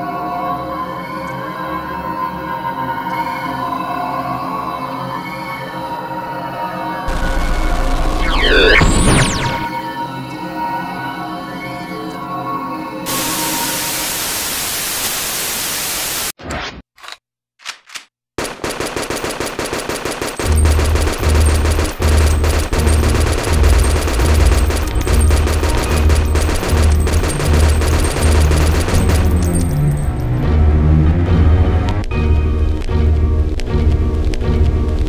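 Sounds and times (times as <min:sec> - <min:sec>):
rapid machine-gun fire: 0:07.1 - 0:09.7, 0:18.4 - 0:30.0
sharp cracks: 0:17.7 - 0:30.1, 0:31.9 - 0:35.0.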